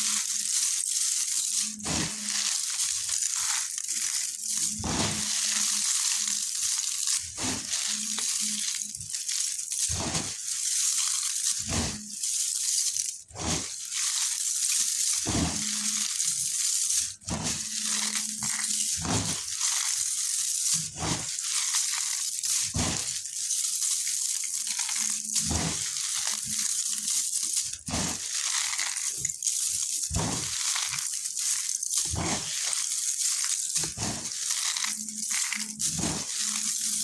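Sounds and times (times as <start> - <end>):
clay crunching and crumbling: 0.0 - 37.0.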